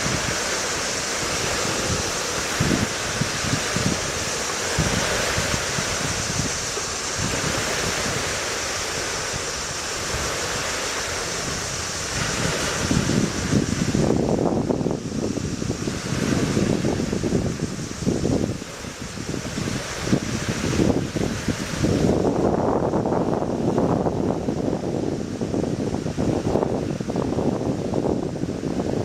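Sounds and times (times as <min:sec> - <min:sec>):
wind buffeting microphone: 0:00.0 - 0:29.0.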